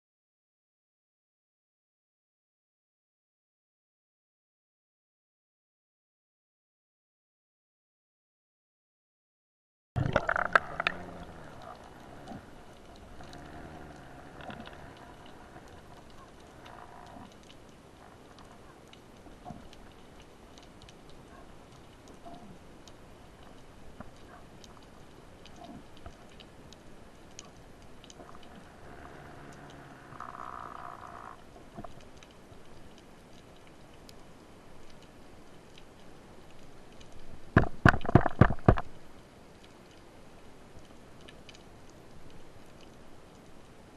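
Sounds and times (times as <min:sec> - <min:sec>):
low underwater hiss: 0:10.0 - 0:19.9, 0:20.8 - 0:31.4
sharp clicks and crackles: 0:10.0 - 0:40.1, 0:40.7 - 0:43.8
sharp knocks and clicks: 0:37.5 - 0:38.9.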